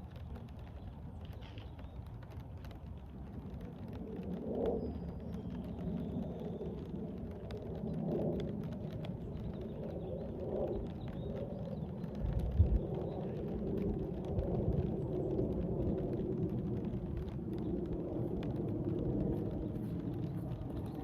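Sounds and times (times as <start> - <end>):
raindrop ticks: 0.0 - 21.0
low rumble: 2.0 - 21.0.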